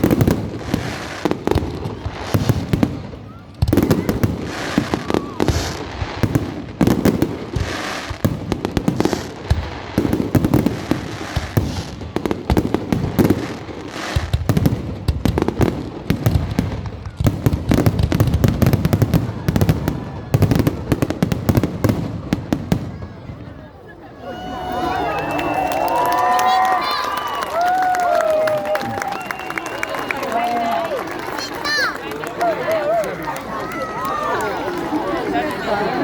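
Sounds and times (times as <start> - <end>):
fireworks bangs and crackles: 0.0 - 23.9.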